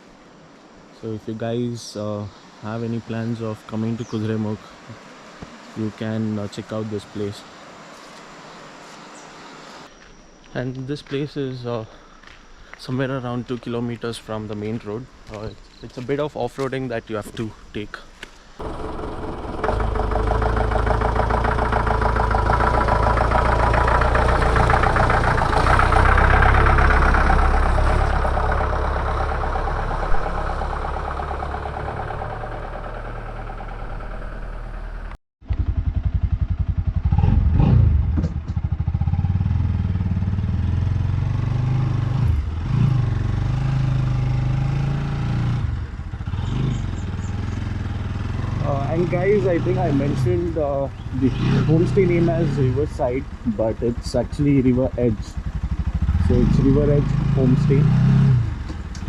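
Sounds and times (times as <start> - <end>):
motorcycle engine running: 18.6 - 59.0.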